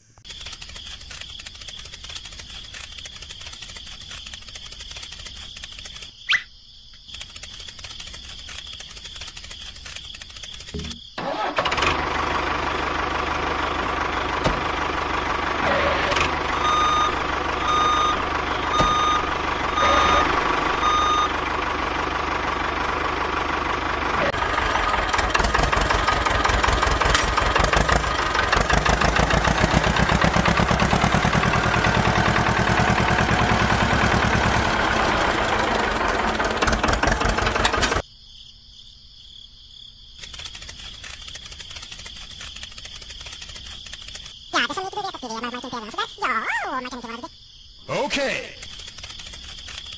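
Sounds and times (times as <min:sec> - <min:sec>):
toy electric motor whirring: 0:00.2 - 0:06.4, 0:07.1 - 0:11.0, 0:40.2 - 0:45.0, 0:48.6 - 0:49.9
electronic beeps: 0:16.6 - 0:21.3.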